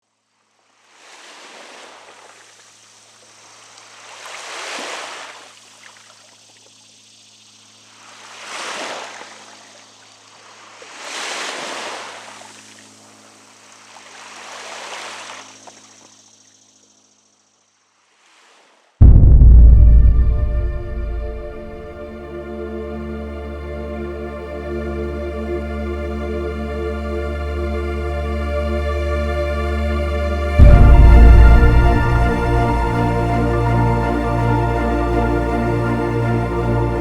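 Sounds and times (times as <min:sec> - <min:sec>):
water waves washing in: 0:00.8 - 0:06.3, 0:08.0 - 0:15.9, 0:30.5 - 0:37.0
faint low hum: 0:19.0 - 0:24.2, 0:30.5 - 0:37.0.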